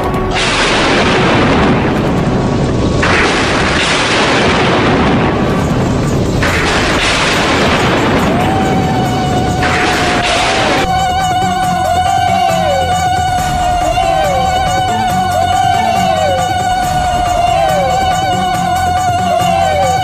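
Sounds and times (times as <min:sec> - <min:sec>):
explosion-like booming over loudspeakers: 0:00.0 - 0:11.0
held musical tone: 0:05.6 - 0:20.0.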